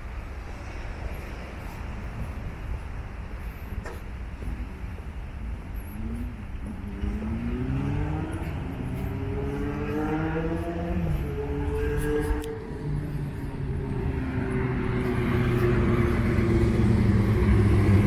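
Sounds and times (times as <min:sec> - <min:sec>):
traffic rumble: 0:00.0 - 0:18.0
wind: 0:00.0 - 0:18.0
engine whine rising in pitch: 0:06.8 - 0:18.0.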